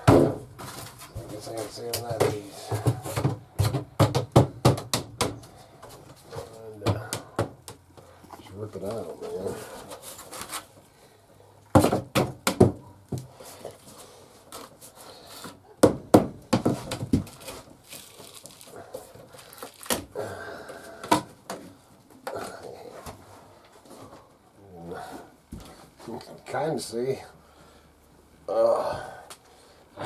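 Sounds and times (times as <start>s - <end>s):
knocks thuds and cracks: 0.0s - 5.5s, 11.7s - 13.3s, 15.8s - 18.7s, 19.3s - 20.1s
wood being pried and ripped: 15.8s - 20.1s.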